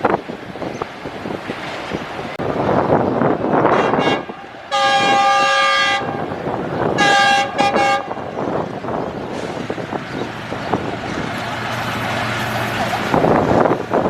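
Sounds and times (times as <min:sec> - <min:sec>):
train noise: 0:00.0 - 0:14.0
wind on microphone: 0:00.0 - 0:14.0
locomotive air horn: 0:03.6 - 0:06.4, 0:07.0 - 0:08.3.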